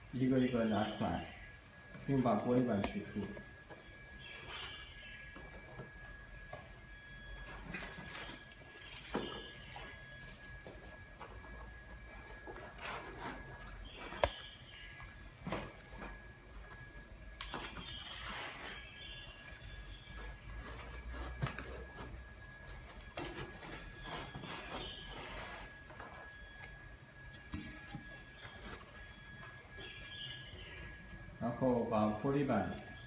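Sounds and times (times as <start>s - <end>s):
faint steady high tone: 0.0s - 33.0s
packing material rustling: 23.1s - 26.8s.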